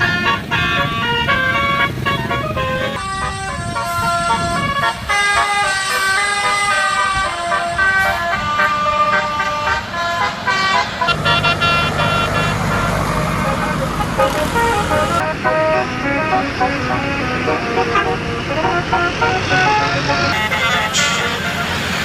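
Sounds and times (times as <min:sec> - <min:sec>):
bus engine rumble: 0:00.0 - 0:22.0
multi-note bus horn tune: 0:00.0 - 0:22.0.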